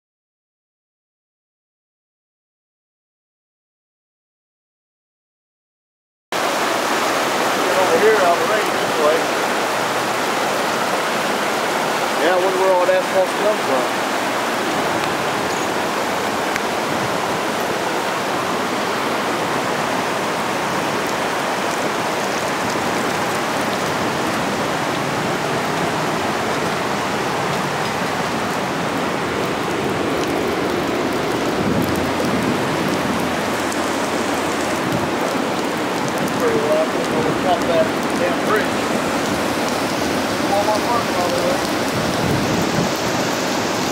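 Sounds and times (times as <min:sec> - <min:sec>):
floodwater rushing: 0:06.4 - 0:43.9.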